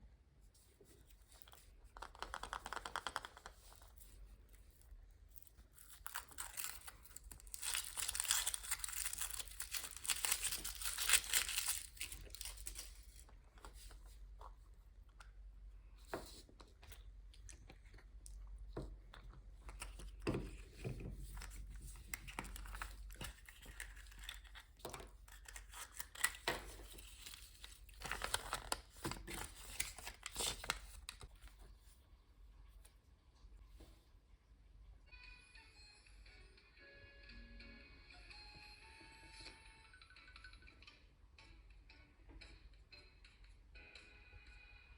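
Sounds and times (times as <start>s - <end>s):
foil wrapper crinkling and tearing: 5.3s - 13.9s, 21.4s - 31.4s.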